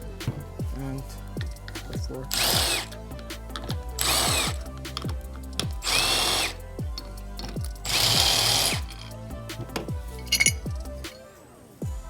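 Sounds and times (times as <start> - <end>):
power drill bursts: 2.3 - 2.9, 4.0 - 4.6, 5.8 - 6.6, 7.8 - 8.9.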